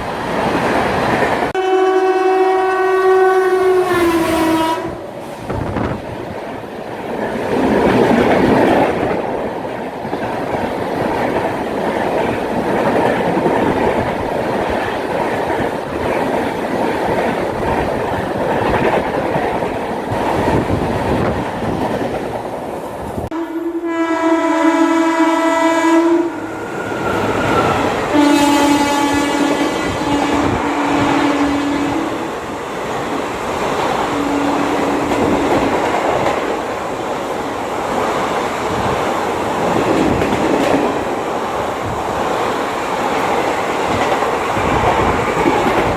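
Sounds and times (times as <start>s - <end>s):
train horn blasts: 1.6s - 5.1s, 23.3s - 32.2s, 34.1s - 35.2s
train wheels rattling over track: 3.8s - 23.3s, 26.0s - 45.9s.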